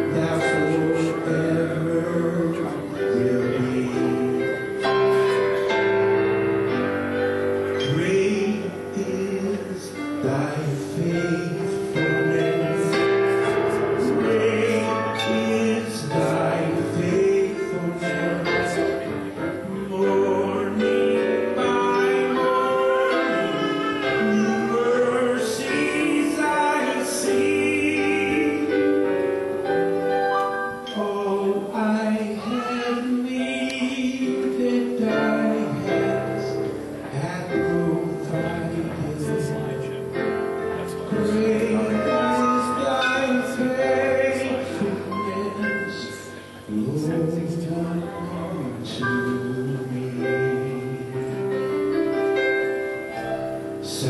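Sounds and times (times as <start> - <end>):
worship singing: 0.0 - 5.4, 6.2 - 52.2
sustained instrumental accompaniment: 0.0 - 31.4.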